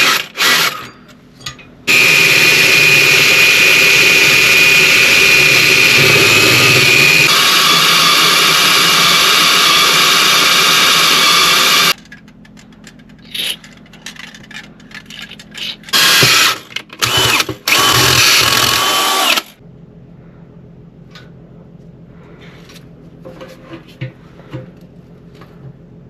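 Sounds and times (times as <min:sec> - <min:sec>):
power drill drilling into metal: 0:00.0 - 0:00.9, 0:01.9 - 0:12.0, 0:15.9 - 0:19.5.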